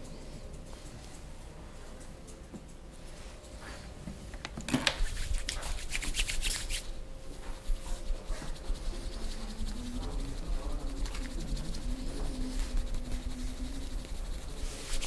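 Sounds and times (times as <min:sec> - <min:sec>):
hands rubbing skin and hair: 0:04.9 - 0:15.0
scratchy strokes: 0:05.0 - 0:15.0.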